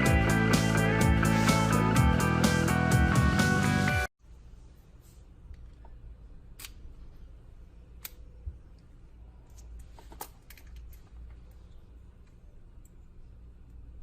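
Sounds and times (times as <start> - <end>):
low steady hum: 4.2 - 14.0.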